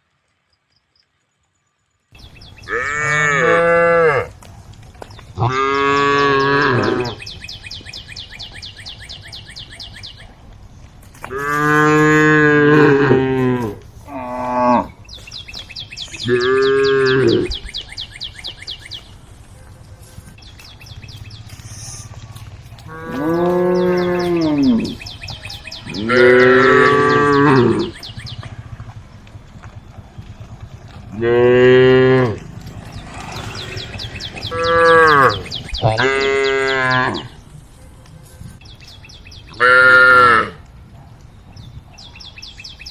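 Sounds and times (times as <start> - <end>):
cows mooing: 2.6 - 4.5, 5.4 - 7.4, 11.3 - 15.0, 16.1 - 17.7, 21.5 - 29.0, 30.8 - 37.4, 39.5 - 40.6.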